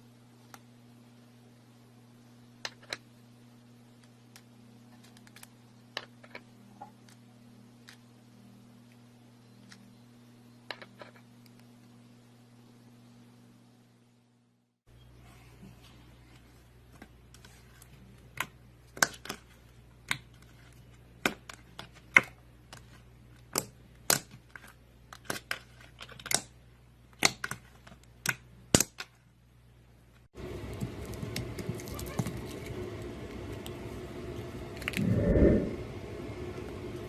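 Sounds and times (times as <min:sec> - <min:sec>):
faint steady hum: 0:00.0 - 0:37.0
steady low hum: 0:29.6 - 0:37.0.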